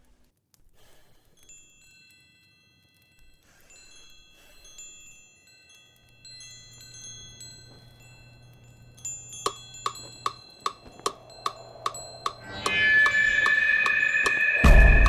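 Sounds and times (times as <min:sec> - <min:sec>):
wind chimes ringing: 0:01.4 - 0:15.0
steady ticking: 0:05.7 - 0:15.0.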